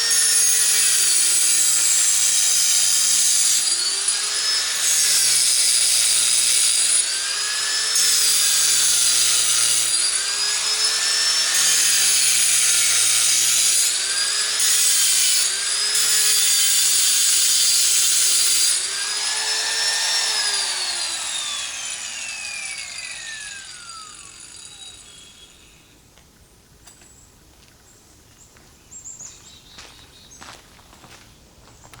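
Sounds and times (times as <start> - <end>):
disc grinder cutting rock: 0.0 - 25.4
grinder winding down: 0.0 - 25.8.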